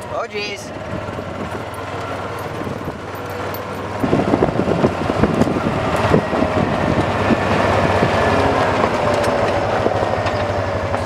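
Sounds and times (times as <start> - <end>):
vehicle engine running: 0.0 - 11.0
clatter of knocks and rattles: 1.0 - 6.3.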